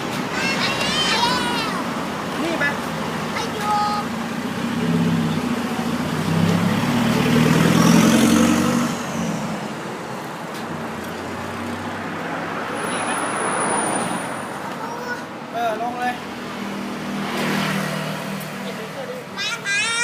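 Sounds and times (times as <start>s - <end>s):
road noise: 0.0s - 20.0s.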